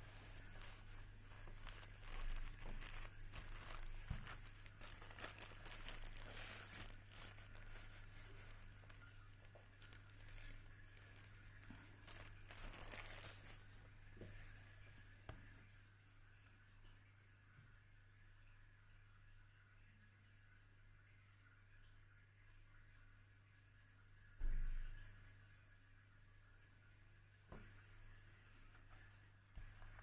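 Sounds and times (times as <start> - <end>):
packaging crinkling and rustling: 0.0 - 14.6, 29.6 - 30.0.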